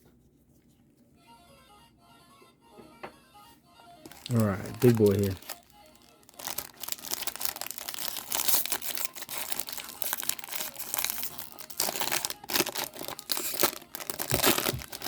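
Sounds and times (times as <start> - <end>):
plastic wrapper crinkling: 4.1 - 15.0.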